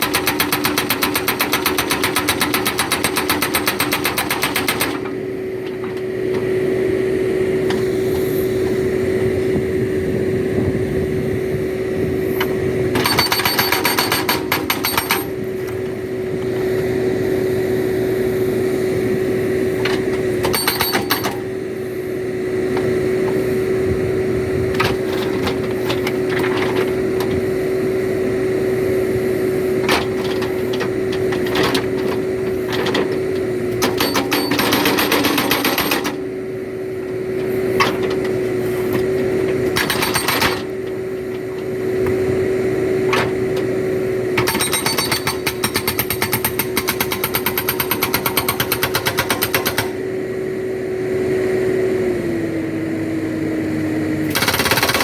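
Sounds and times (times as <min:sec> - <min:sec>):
hydraulic rock breaker hammering: 0:00.0 - 0:06.5, 0:12.3 - 0:16.6, 0:19.8 - 0:21.5, 0:29.8 - 0:36.3, 0:37.1 - 0:50.0, 0:54.2 - 0:55.0
backhoe engine running: 0:00.0 - 0:55.0.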